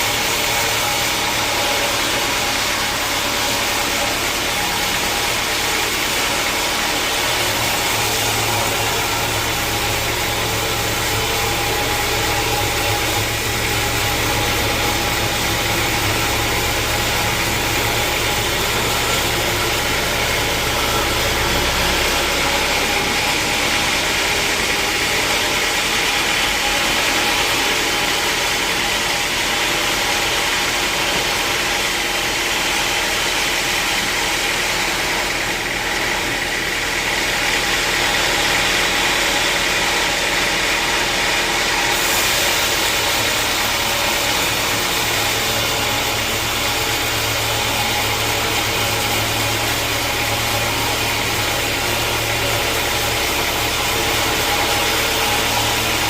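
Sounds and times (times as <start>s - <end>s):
sawmill machinery droning: 0.0s - 56.0s.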